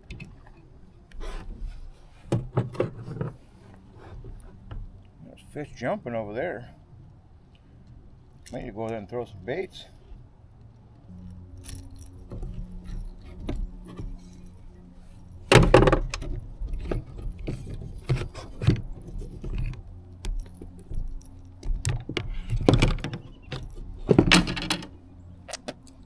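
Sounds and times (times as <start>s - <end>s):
metallic jingling and rattling: 11.1s - 25.0s.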